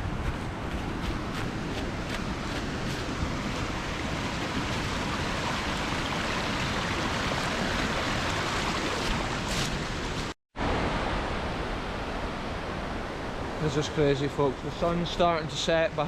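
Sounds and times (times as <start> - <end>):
river rushing: 0.0 - 14.4
waterfall roar: 0.8 - 9.5.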